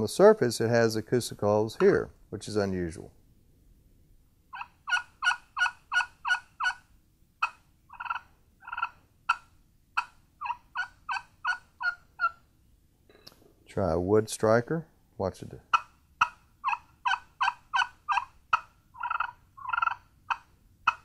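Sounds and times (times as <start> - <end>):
turkey call yelps: 4.5 - 12.4, 15.7 - 21.0.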